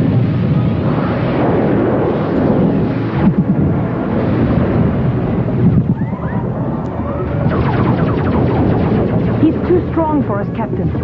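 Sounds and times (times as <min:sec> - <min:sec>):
cartoon explosion rumble: 0:07.2 - 0:11.0.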